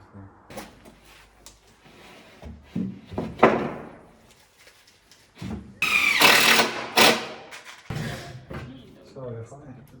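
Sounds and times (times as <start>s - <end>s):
timber knocks and thuds: 1.8s - 4.2s.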